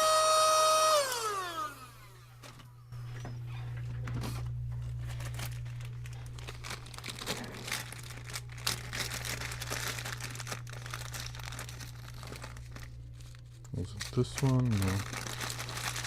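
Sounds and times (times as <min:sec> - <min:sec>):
steady low hum: 0:01.2 - 0:16.0.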